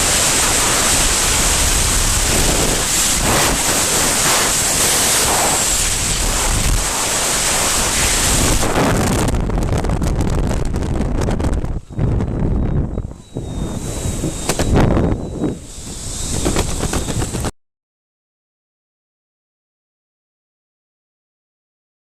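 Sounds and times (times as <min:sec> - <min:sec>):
wind rushing over microphone: 0:00.0 - 0:17.5.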